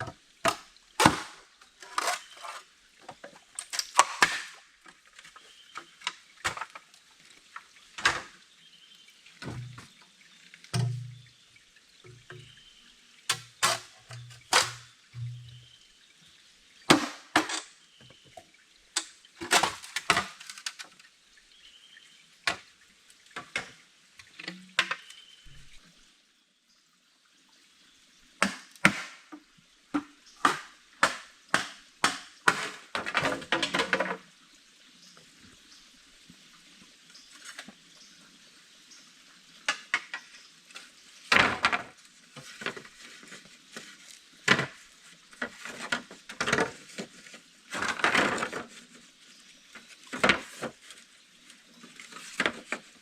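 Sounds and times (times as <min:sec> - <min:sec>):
sharp knocks and clatter: 0:10.8 - 0:11.3, 0:13.3 - 0:15.6.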